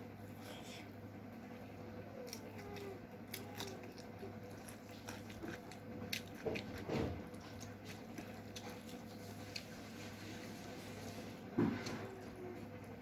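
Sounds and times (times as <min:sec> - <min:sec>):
wet chewing and lip-smacking: 0:02.2 - 0:09.9
food squelches: 0:02.2 - 0:12.4.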